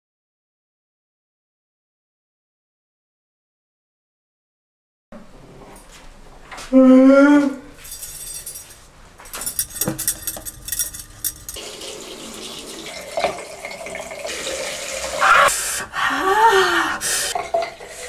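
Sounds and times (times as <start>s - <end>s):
light clicks and clinks: 7.8s - 11.6s
tap water running into sink: 11.3s - 15.2s, 17.3s - 18.0s.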